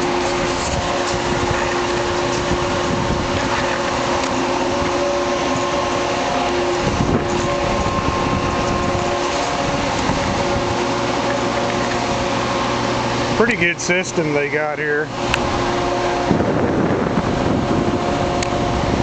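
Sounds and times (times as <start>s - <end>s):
low rumble: 0.0s - 13.5s
fan and motor hums: 0.0s - 19.0s
machinery drone: 0.0s - 19.0s.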